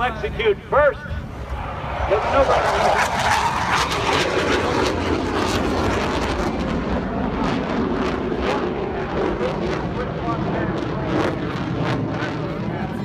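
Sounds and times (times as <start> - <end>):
aircraft engine roar overhead: 0.0 - 13.0.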